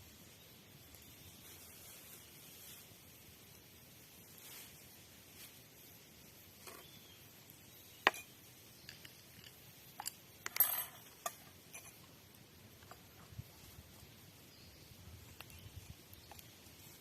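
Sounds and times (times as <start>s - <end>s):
ringing clinks: 10.0s - 11.9s.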